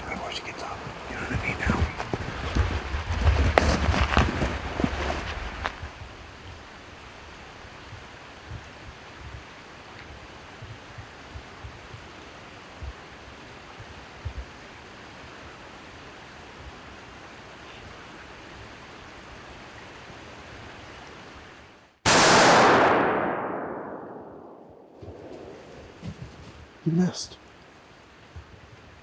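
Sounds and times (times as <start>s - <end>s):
outdoor hiss: 0.0s - 2.9s, 25.2s - 29.0s
rifle shot: 22.1s - 26.0s.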